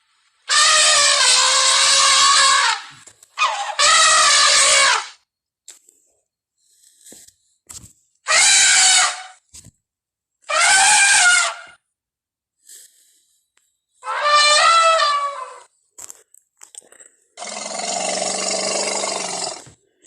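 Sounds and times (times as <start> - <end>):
elephant trumpeting: 0.5 - 5.2, 8.3 - 9.4, 10.5 - 11.7, 14.0 - 15.7, 17.4 - 19.7.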